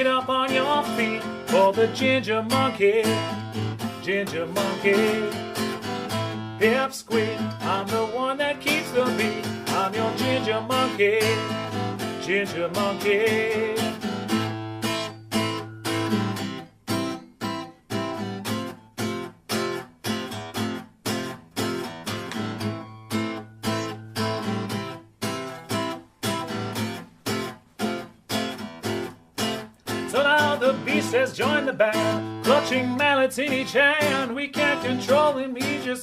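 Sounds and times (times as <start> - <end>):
person singing: 0.0 - 5.8, 6.6 - 14.0, 30.0 - 36.0
guitar strumming chords: 0.0 - 36.0.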